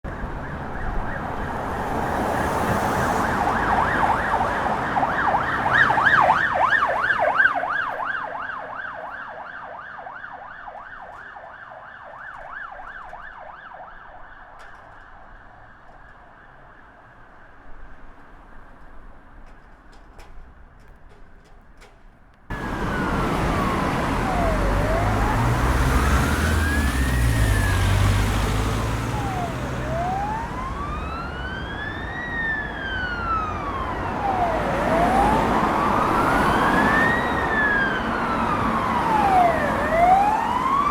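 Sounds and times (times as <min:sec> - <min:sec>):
road and engine rumble: 0:00.0 - 0:07.9, 0:18.1 - 0:40.9
police sirens yelping: 0:00.1 - 0:13.7, 0:22.5 - 0:40.9.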